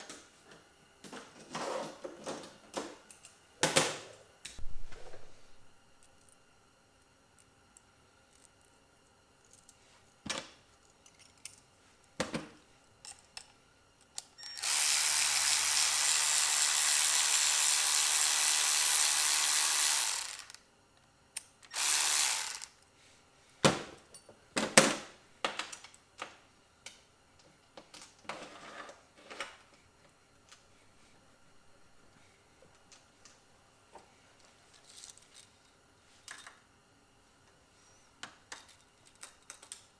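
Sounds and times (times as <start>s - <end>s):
power tool driving bolts: 14.4s - 20.6s, 21.7s - 22.7s.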